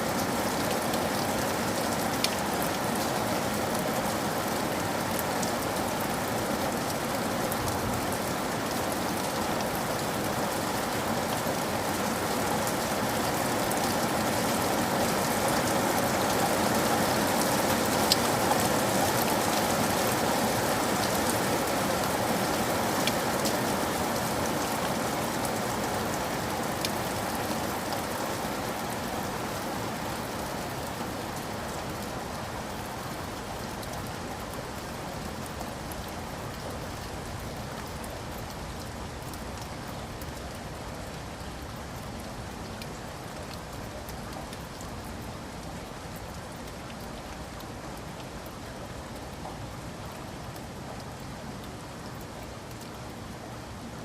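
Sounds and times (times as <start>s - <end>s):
rain hissing on a surface: 0.0s - 54.0s
raindrop ticks: 32.7s - 53.2s.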